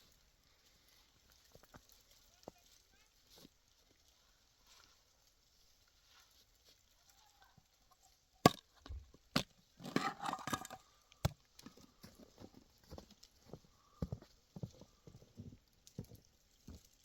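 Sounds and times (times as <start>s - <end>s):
clatter and scrapes: 9.8s - 11.0s.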